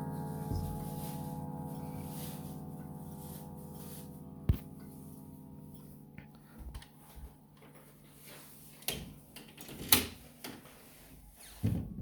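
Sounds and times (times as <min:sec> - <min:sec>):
grandfather clock chime: 0:00.0 - 0:06.0.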